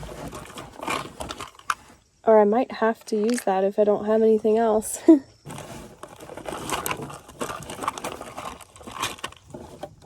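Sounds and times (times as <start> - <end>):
crinkling of lure packets: 0.0 - 1.9, 5.5 - 10.0.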